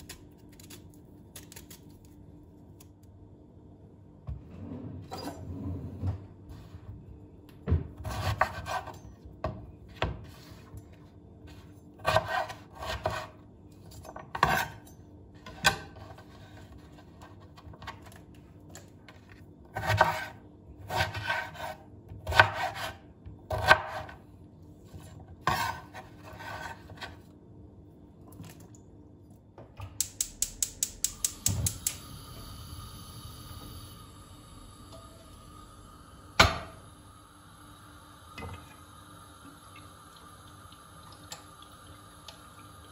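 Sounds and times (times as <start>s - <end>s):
steady humming tone: 27.3s - 42.9s.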